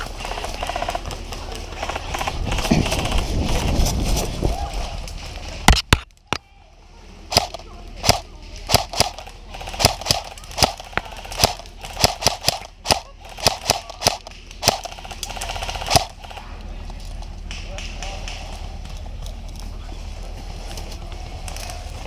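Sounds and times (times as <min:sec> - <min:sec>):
airsoft gun shots: 0:07.3 - 0:16.3.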